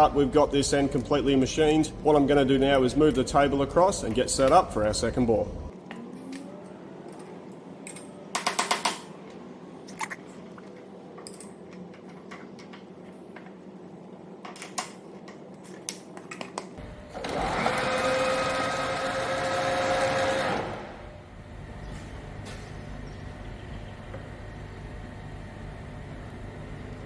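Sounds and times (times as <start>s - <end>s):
machine drive whine: 16.8s - 27.0s
low steady hum: 21.0s - 27.0s.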